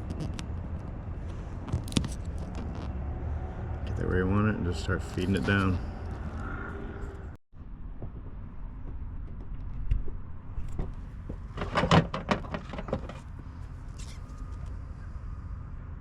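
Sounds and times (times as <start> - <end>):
steady low rumble: 0.0 - 11.8.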